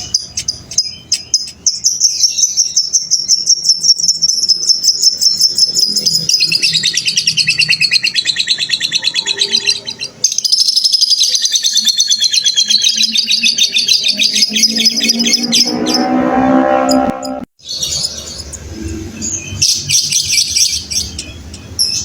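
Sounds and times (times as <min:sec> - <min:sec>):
lovebird rapid chatter trill: 0:00.0 - 0:15.9.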